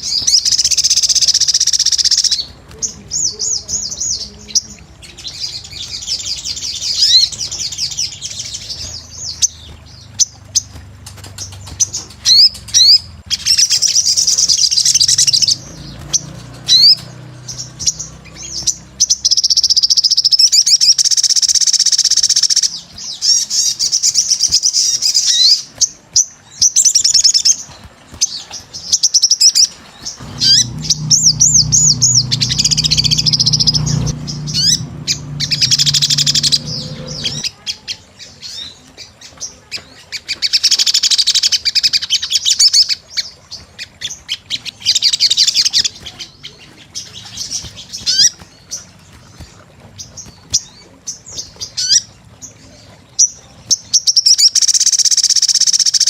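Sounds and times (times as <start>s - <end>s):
bird twittering: 11.5s - 27.6s, 28.9s - 37.5s.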